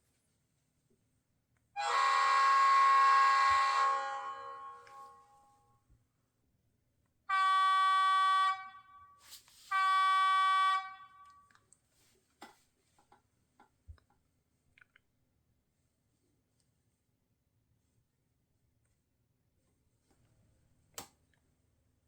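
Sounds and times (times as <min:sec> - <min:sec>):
model train horn from small speaker: 0:01.8 - 0:05.6, 0:07.3 - 0:11.5.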